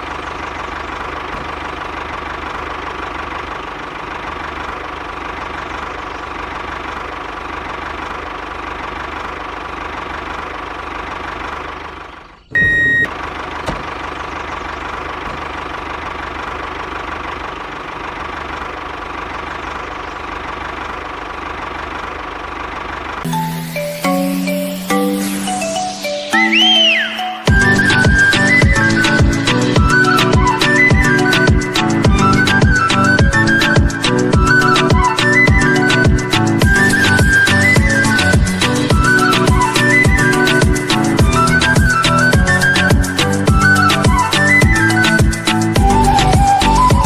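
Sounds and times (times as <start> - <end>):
high-pitched tone: 23.3 - 31.5.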